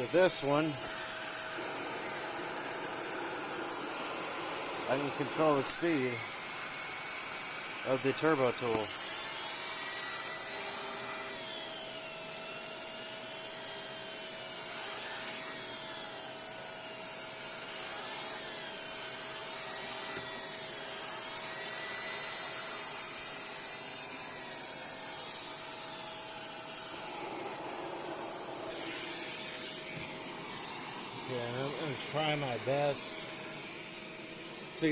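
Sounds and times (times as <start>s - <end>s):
spinning brush whine: 0.0s - 12.8s, 13.7s - 34.9s
upright vacuum running: 0.0s - 34.9s.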